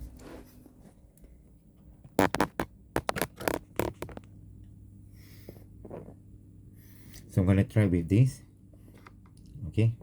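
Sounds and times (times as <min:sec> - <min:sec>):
plastic clicks and knocks: 0:02.2 - 0:04.3.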